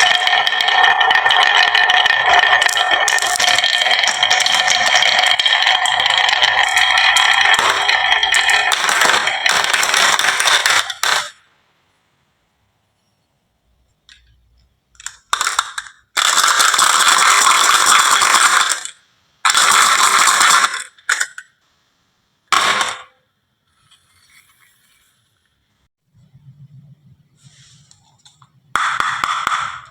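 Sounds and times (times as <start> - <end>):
marbles rattling on wooden run: 0.0 - 11.4, 15.0 - 21.3.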